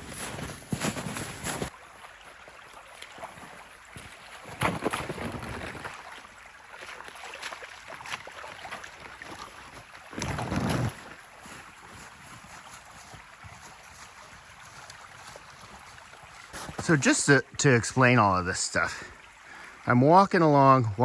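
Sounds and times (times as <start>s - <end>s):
footsteps crunching through snow: 0.0s - 1.8s, 2.9s - 6.2s, 6.8s - 17.0s
stream rushing: 1.5s - 21.0s.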